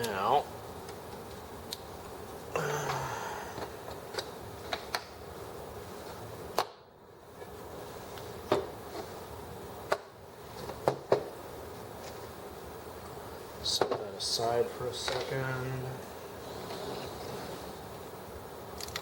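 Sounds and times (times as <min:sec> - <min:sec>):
scraping rustle: 0:16.4 - 0:18.0.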